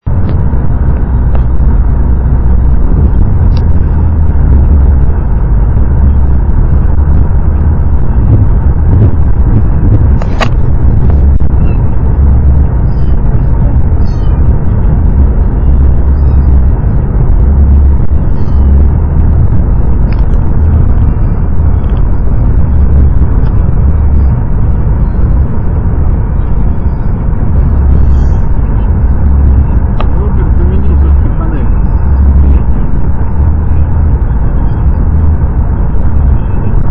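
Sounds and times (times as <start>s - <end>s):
car engine and road noise rumble: 0.0s - 36.9s.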